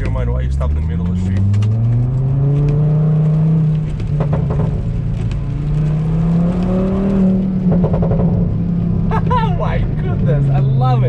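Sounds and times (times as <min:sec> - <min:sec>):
car engine revving: 0:00.0 - 0:11.0
exhaust cracks: 0:00.0 - 0:11.0.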